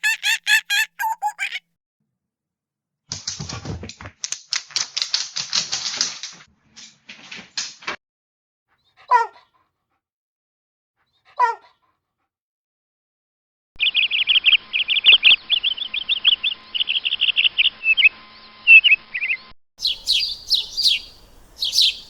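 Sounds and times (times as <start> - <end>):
dog whimpering: 0.0 - 1.6.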